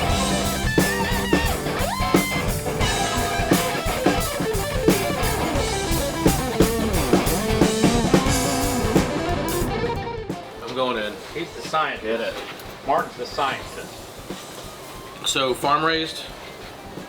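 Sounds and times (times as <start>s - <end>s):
bass line: 0.0s - 10.3s
electric guitar lead: 0.0s - 10.7s
drum kit beat: 0.0s - 17.0s.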